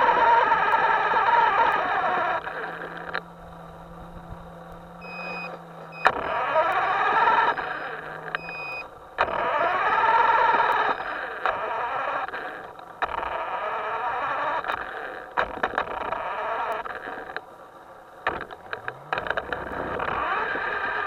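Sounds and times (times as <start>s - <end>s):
electric motor whining: 0.0s - 17.4s, 18.2s - 21.0s
electronic hum: 0.0s - 21.0s
short beeping tones: 4.9s - 8.9s.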